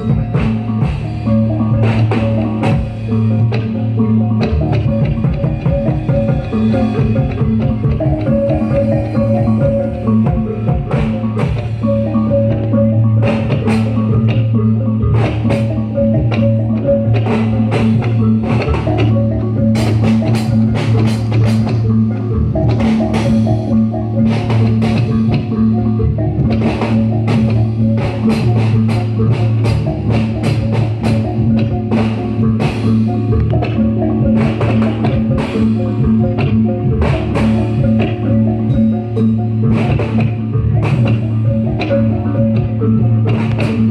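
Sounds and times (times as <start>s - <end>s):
low sustained tone: 0.0s - 30.2s
drums and percussion beating: 0.0s - 43.9s.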